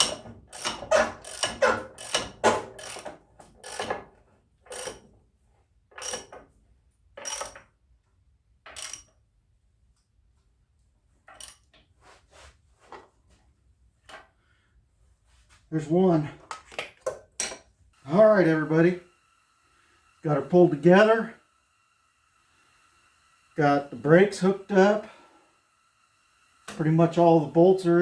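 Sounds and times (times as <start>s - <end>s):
ratchet clicking: 0.0s - 4.0s, 4.7s - 5.0s, 6.0s - 6.3s, 7.2s - 7.6s, 8.7s - 9.1s.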